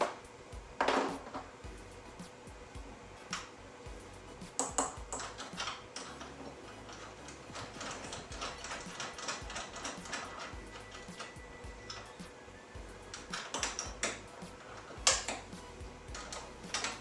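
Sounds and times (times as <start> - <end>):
metallic taps: 4.5 - 12.2, 13.1 - 17.0.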